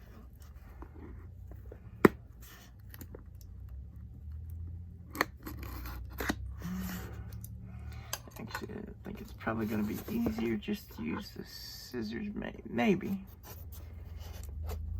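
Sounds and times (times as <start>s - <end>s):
cardboard scraping and rustling: 9.3s - 11.3s.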